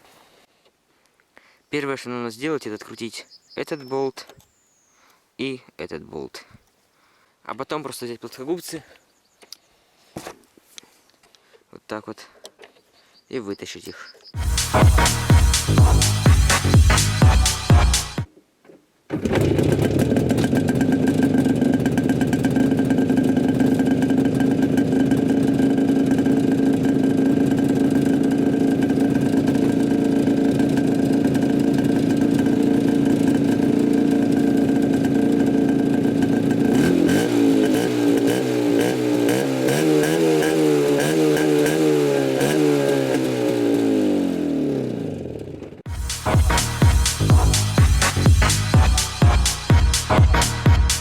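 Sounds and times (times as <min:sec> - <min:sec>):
motorcycle engine revving: 0:14.4 - 0:18.3, 0:19.1 - 0:51.0.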